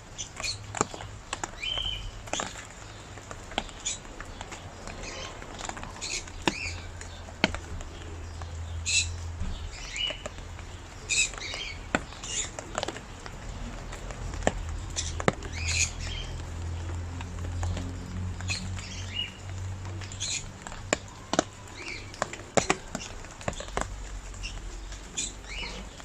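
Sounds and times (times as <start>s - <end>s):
rain falling: 0.0s - 26.0s
small bird chirping: 0.2s - 3.0s.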